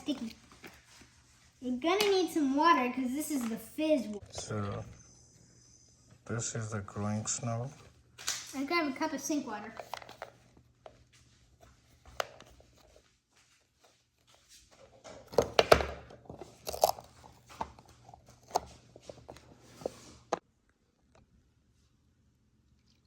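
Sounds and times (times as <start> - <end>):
plastic toys knocking and clicking: 15.2 - 16.9
packaging crinkling: 16.4 - 18.6.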